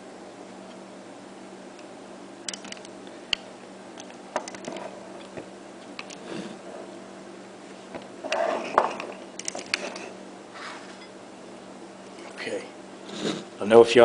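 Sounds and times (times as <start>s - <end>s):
steady low hum: 0.0s - 14.0s
metallic lockpicking clicks: 2.5s - 3.4s.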